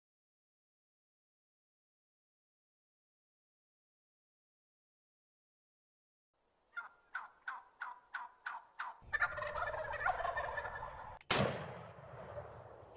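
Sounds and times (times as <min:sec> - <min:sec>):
turkey gobbling: 0:06.7 - 0:11.2
turkey yelps: 0:06.7 - 0:11.2
loud gunshot: 0:11.3 - 0:12.3.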